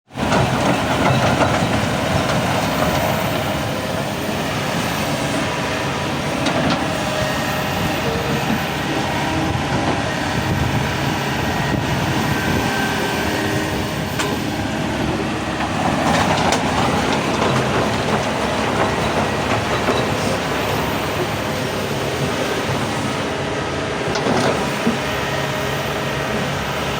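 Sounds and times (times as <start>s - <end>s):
excavator rumble: 0.1s - 26.9s
sharp knocks and clanks: 14.2s - 14.5s.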